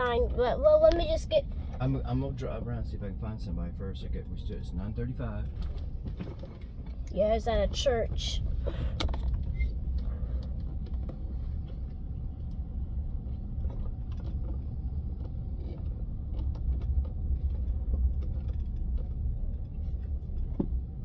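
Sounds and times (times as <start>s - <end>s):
car cabin low rumble: 0.0s - 21.0s
faint clicks and rattles: 4.2s - 21.0s.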